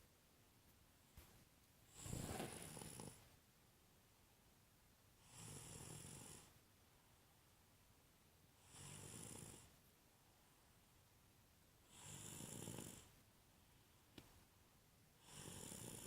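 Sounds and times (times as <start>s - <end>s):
faint snoring: 1.9s - 3.3s, 5.2s - 6.6s, 8.6s - 9.8s, 11.8s - 13.2s, 15.2s - 16.0s.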